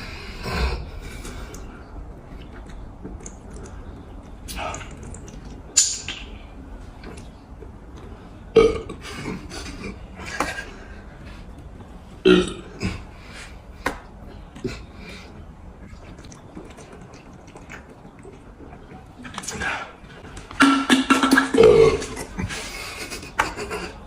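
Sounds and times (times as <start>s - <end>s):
person burping: 8.5s - 9.9s, 12.2s - 13.1s, 20.6s - 22.5s.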